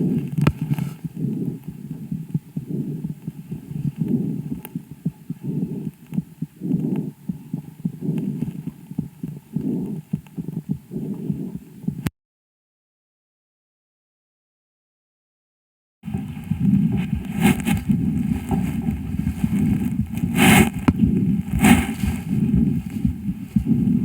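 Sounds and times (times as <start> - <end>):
breath noise through stethoscope: 0.0 - 12.1, 16.1 - 24.0
faint clicks: 3.1 - 10.8.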